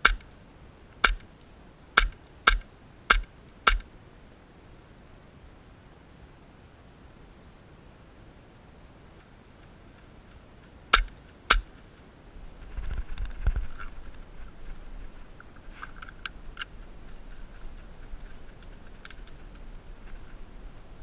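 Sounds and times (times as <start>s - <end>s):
airsoft gun shots: 1.0s - 1.2s, 2.0s - 3.8s, 10.9s - 11.7s
low rumbling handling noise: 11.0s - 21.0s.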